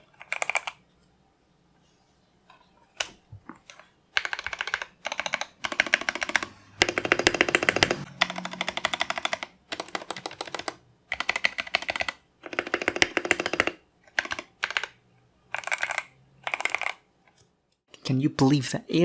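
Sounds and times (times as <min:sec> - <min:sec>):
mechanical keyboard typing: 0:00.0 - 0:00.8, 0:03.0 - 0:17.1.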